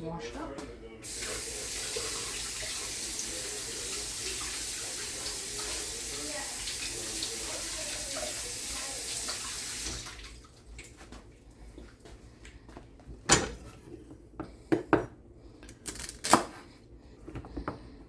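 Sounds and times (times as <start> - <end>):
sink tap running: 1.0 - 10.9.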